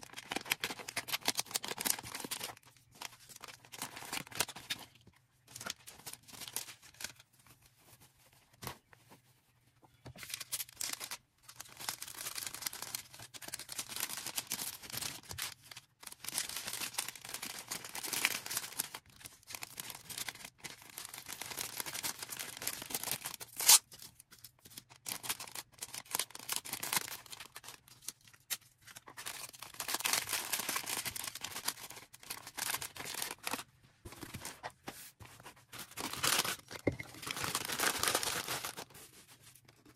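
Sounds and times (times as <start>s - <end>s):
packaging rustling and crinkling: 10.2s - 39.9s.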